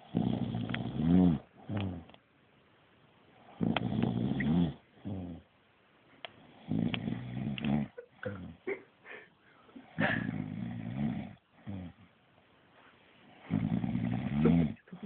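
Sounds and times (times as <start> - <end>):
man snoring: 0.1 - 2.0, 3.6 - 5.4, 6.6 - 8.6, 10.0 - 12.0, 13.5 - 14.8.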